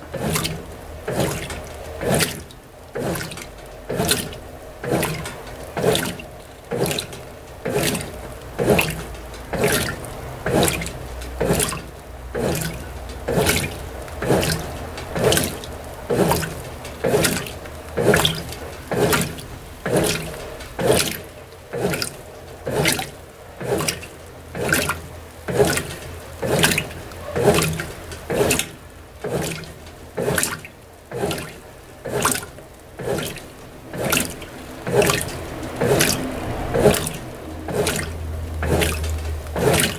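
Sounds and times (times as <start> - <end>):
washing machine sloshing: 0.0 - 39.9.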